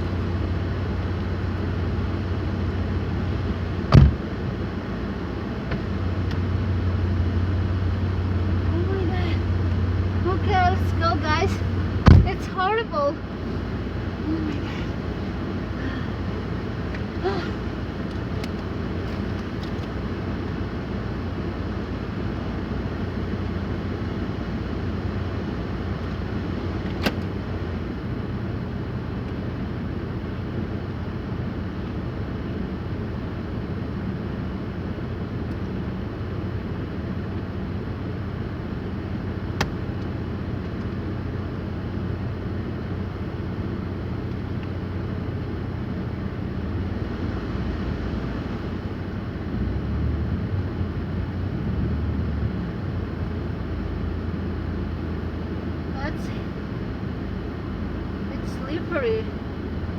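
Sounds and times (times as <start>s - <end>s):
car driving on snowy road: 0.0s - 59.9s.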